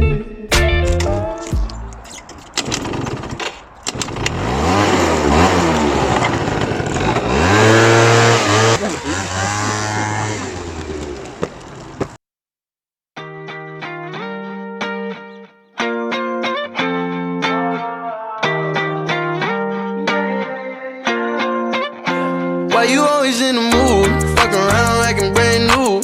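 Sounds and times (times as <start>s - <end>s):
scooter engine revving: 1.9s - 12.2s.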